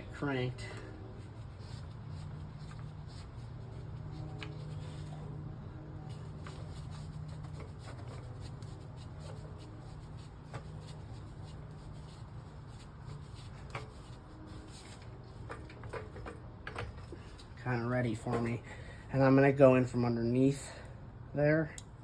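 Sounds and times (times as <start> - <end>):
tools and parts clicking: 21.7 - 22.0.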